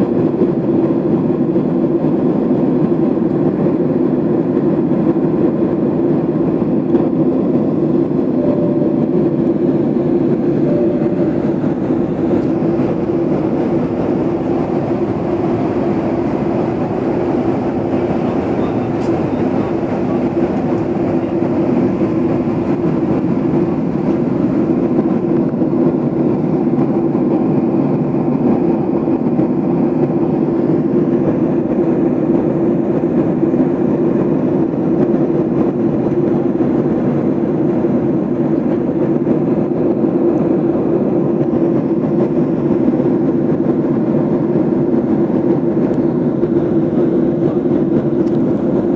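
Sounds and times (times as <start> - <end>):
airliner cabin engine drone: 0.0 - 48.9.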